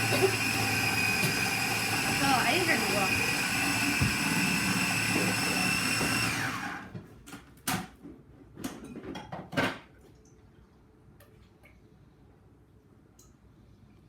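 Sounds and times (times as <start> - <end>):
blender motor whining: 0.0 - 7.0.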